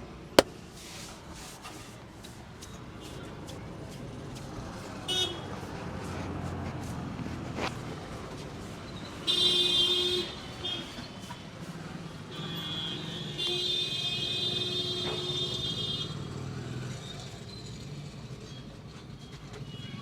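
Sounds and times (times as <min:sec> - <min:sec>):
hum of passing vehicles: 0:04.0 - 0:09.0, 0:16.0 - 0:18.4.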